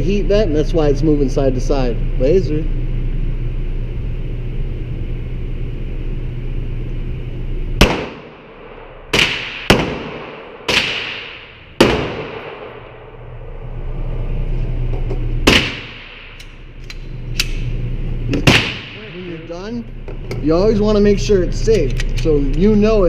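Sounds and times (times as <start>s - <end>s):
steady low hum: 0.0s - 23.0s
handgun shots echoing: 7.8s - 13.0s, 15.5s - 17.7s, 18.3s - 19.1s.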